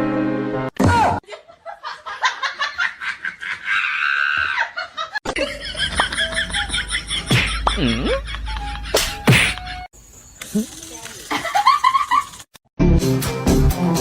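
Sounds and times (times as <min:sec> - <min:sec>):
person laughing: 0:01.2 - 0:09.9, 0:11.3 - 0:12.4.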